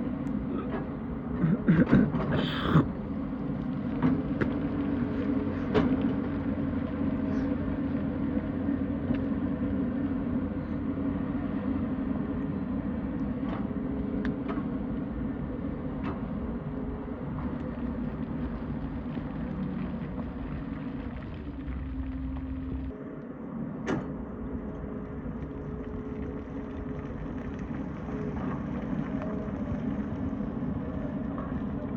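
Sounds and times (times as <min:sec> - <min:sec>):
excavator diesel engine running: 0:03.4 - 0:22.9.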